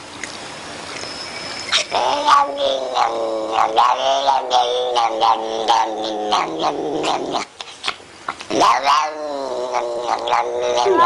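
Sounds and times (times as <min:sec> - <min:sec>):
cat yowling: 0:01.7 - 0:07.2, 0:08.6 - 0:11.0.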